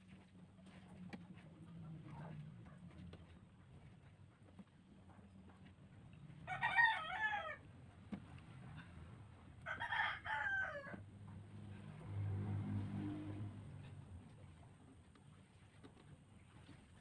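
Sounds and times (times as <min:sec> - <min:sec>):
rooster crowing: 0:06.4 - 0:07.6, 0:09.6 - 0:11.0.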